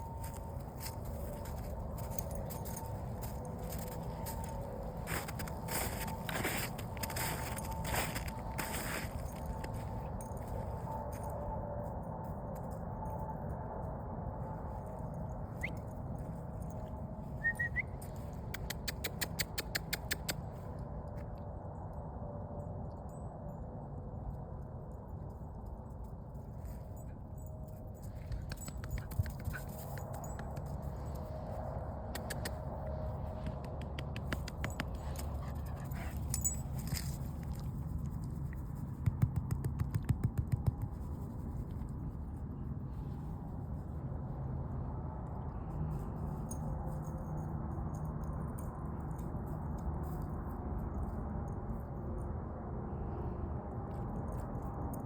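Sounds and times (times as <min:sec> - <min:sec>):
dog footsteps crackling in undergrowth: 0:00.0 - 0:12.8
low outdoor rumble: 0:00.0 - 0:55.0.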